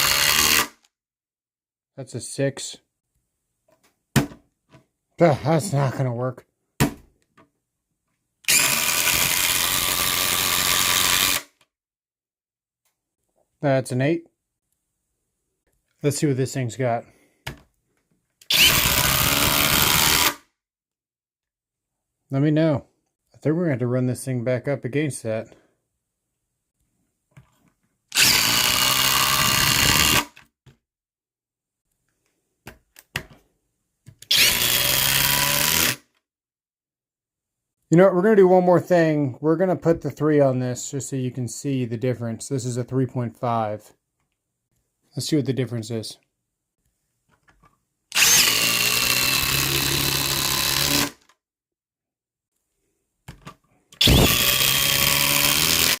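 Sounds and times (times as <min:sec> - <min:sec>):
impact driver running: 0:00.0 - 0:00.7, 0:18.5 - 0:20.4, 0:28.2 - 0:30.3, 0:34.3 - 0:36.0, 0:48.1 - 0:51.2, 0:54.0 - 0:56.0.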